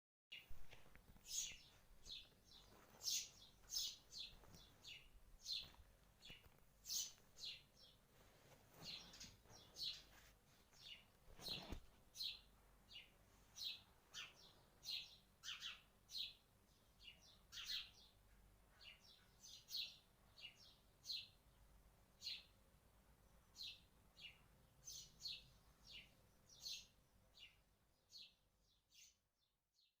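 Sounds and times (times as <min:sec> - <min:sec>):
faint bird chirps: 0:10.8 - 0:21.6.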